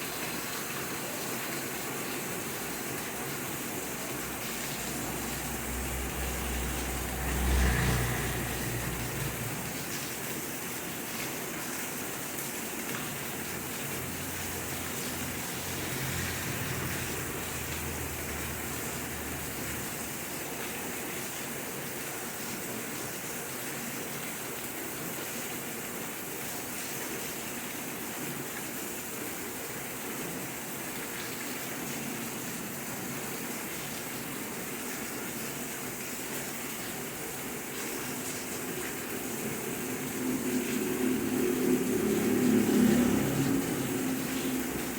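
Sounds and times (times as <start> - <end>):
heavy rain falling: 0.0 - 44.9
low rumble: 4.8 - 10.0.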